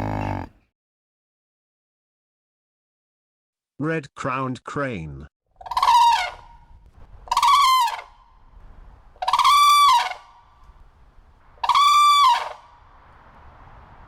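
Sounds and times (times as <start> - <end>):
crane calling: 5.6 - 13.2.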